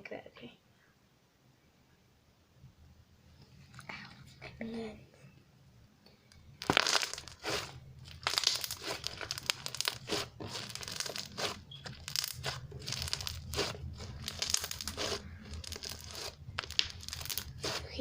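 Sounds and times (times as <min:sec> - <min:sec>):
slime squishing and crackling: 0:06.6 - 0:18.0.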